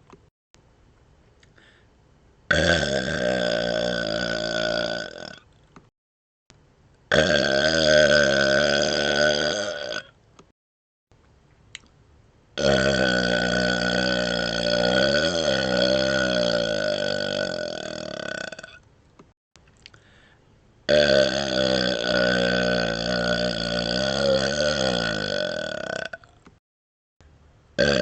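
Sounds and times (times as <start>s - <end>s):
man burping: 2.5s - 5.4s, 7.1s - 10.1s, 12.6s - 18.8s, 20.9s - 26.4s, 27.8s - 28.0s.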